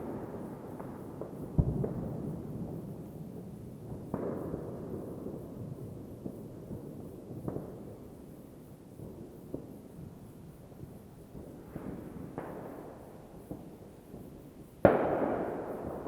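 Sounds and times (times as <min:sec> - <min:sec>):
rumble of distant fireworks: 0:00.0 - 0:16.0
sharp firework bangs: 0:03.9 - 0:05.6, 0:11.4 - 0:16.0.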